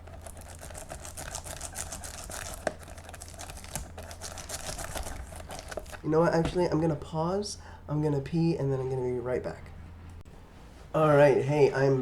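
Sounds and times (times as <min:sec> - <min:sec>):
plastic wrapping crinkling: 0:00.0 - 0:06.1
steady low hum: 0:00.0 - 0:12.0.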